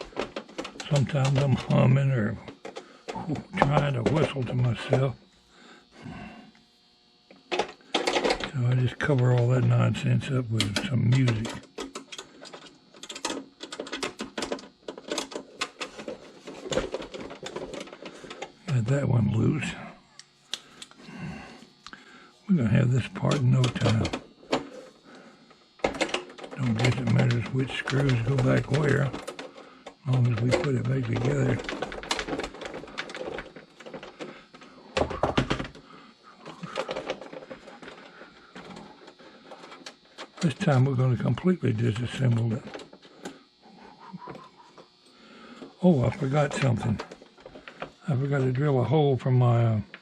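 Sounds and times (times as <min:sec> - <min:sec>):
clicks and knocks of small parts: 0:00.0 - 0:01.8, 0:07.5 - 0:08.5, 0:10.6 - 0:18.5, 0:25.8 - 0:35.8, 0:36.4 - 0:40.4.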